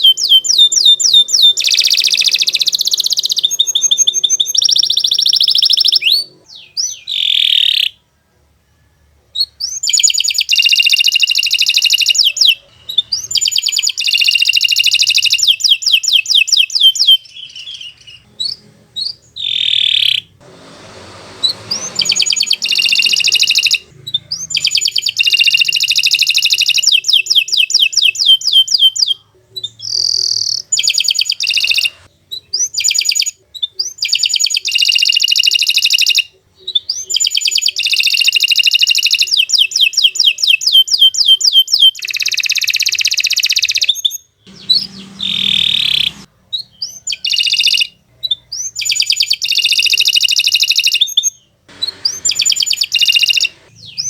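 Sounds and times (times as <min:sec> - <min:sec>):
canary singing trills: 0:00.0 - 0:54.0.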